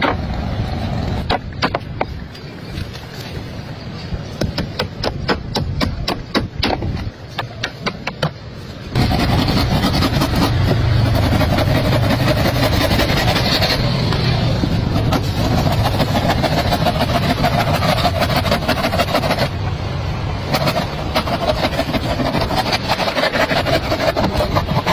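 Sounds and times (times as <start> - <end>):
engine drone: 8.7 - 24.9.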